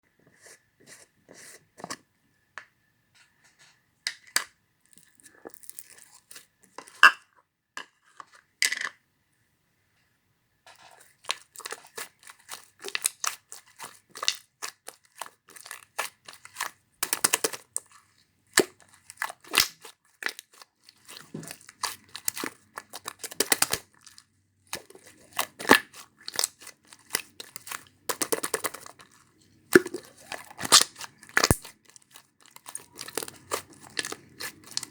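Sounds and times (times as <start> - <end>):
slime crackling and popping: 11.3 - 17.8, 18.6 - 34.9.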